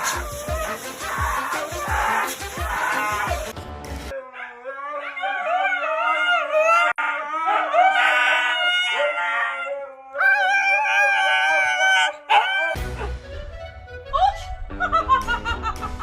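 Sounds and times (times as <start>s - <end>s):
dog howling: 4.1s - 12.8s.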